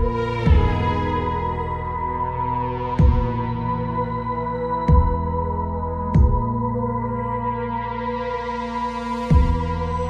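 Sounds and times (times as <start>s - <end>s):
deep low boom: 0.0s - 2.2s
ambient drone chords: 0.0s - 10.0s.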